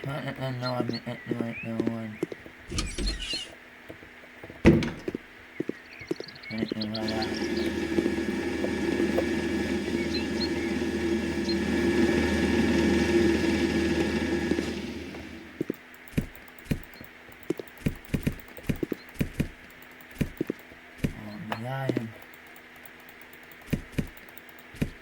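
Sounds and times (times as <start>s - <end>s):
steady mechanical hum: 0.0s - 25.0s
sharp knocks or taps: 15.6s - 21.2s, 21.8s - 25.0s.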